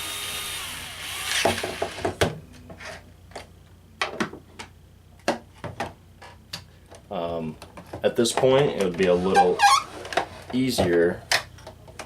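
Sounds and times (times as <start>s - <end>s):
power drill driving screw: 0.0s - 2.0s.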